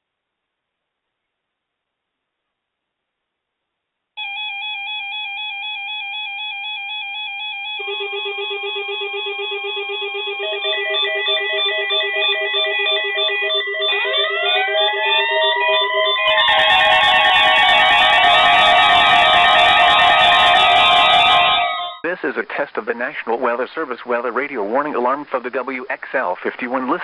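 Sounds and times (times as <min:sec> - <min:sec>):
warbling two-pitch alarm tone: 0:04.2 - 0:22.0
electronic beeping tone: 0:07.8 - 0:22.0
rising siren-like sweeps: 0:07.8 - 0:22.0.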